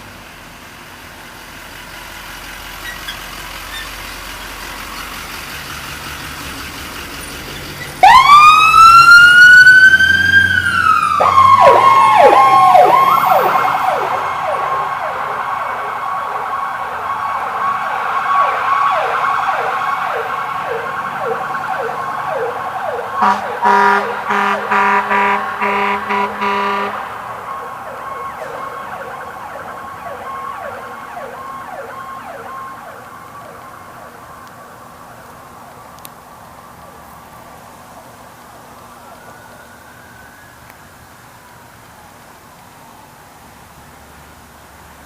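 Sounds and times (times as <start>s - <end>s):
ambulance approaching: 0.0s - 45.0s
electronic siren wailing: 8.0s - 34.5s.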